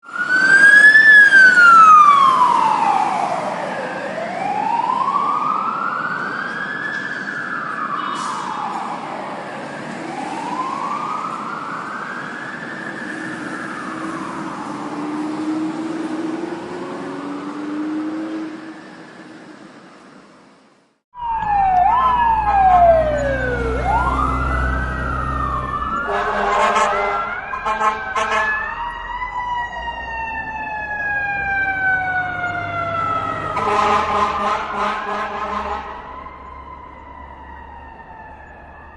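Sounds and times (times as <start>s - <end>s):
fire truck siren wailing: 0.0s - 19.5s, 21.2s - 38.9s
fire truck horn blasts: 7.9s - 8.5s, 26.0s - 28.8s, 33.5s - 36.2s.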